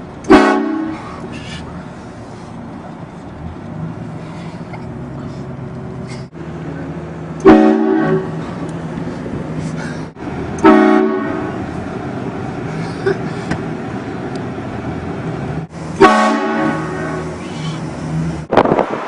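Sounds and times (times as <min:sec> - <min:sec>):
train air horn blasts: 0:00.3 - 0:01.2, 0:07.4 - 0:08.4, 0:10.6 - 0:11.6, 0:16.0 - 0:17.5.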